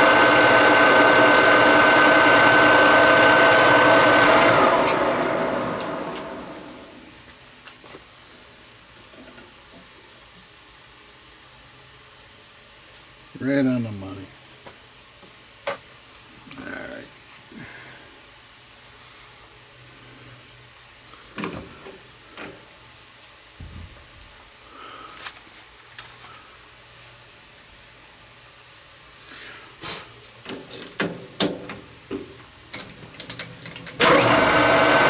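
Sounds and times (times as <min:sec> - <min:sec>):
lathe gearing whining: 0:00.0 - 0:07.0, 0:34.0 - 0:35.0
metal lathe running: 0:00.0 - 0:07.0, 0:34.0 - 0:35.0
metal tools clicking and knocking: 0:32.7 - 0:34.0.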